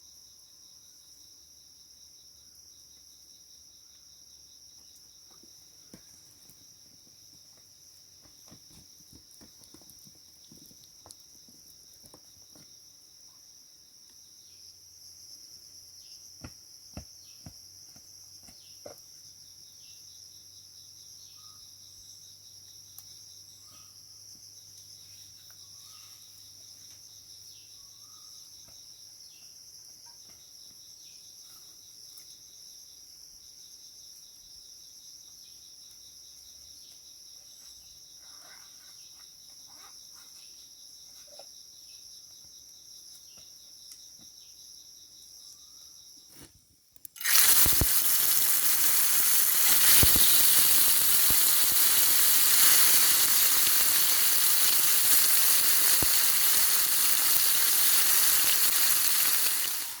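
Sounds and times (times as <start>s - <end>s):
crickets chirping: 0.0s - 60.0s
food frying sizzle: 47.2s - 60.0s.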